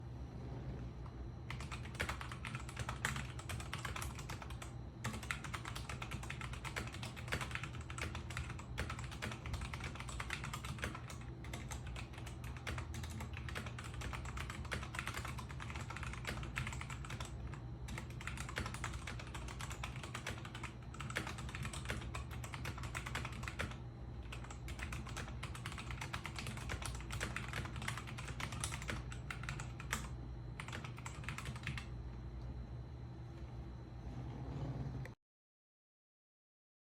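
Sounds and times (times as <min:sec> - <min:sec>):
steady low hum: 0:00.0 - 0:35.2
mechanical keyboard typing: 0:01.5 - 0:31.9.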